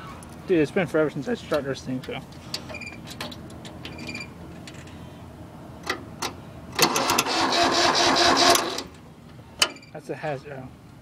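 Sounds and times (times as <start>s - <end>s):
tractor engine cranking: 5.8s - 9.0s.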